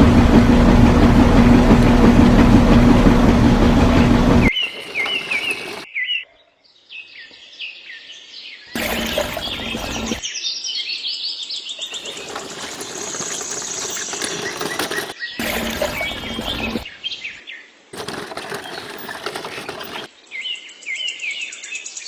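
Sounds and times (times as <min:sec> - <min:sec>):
small birds chirping: 0:04.5 - 0:05.9.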